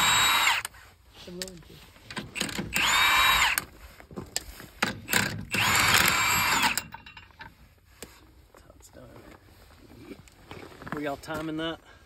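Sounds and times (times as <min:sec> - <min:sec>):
power tool spinning lug nuts: 0:00.0 - 0:00.8, 0:02.2 - 0:03.7, 0:04.8 - 0:07.2.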